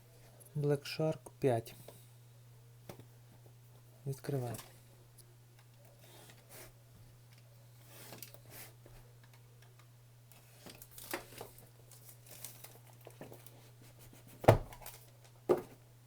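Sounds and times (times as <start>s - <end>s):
packaging crinkling and tearing: 10.8s - 13.5s.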